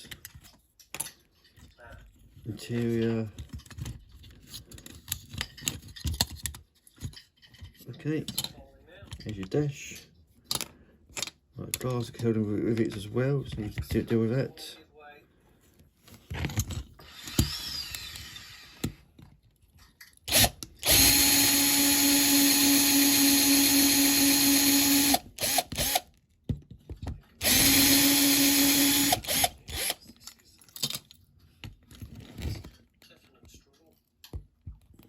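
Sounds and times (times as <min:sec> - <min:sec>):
small electric drill drilling: 0:17.0 - 0:19.0, 0:20.3 - 0:26.1, 0:27.4 - 0:30.1.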